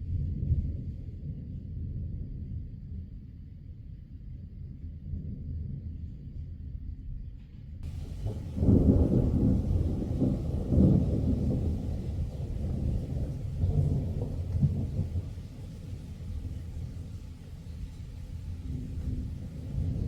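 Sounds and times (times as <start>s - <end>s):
thunder rolling: 7.8s - 17.4s, 18.5s - 20.0s.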